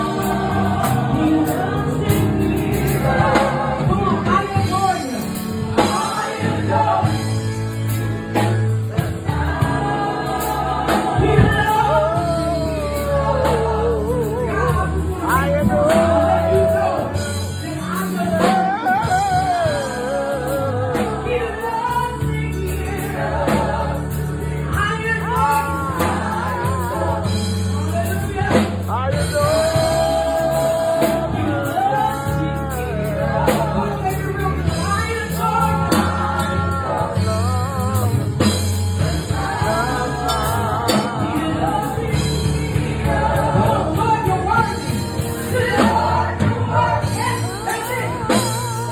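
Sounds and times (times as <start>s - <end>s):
bass notes: 0.0s - 48.9s
gospel choir singing: 0.0s - 48.9s
live band playing: 0.0s - 48.9s
drum hits: 8.4s - 12.0s
woman singing lead: 24.4s - 48.9s.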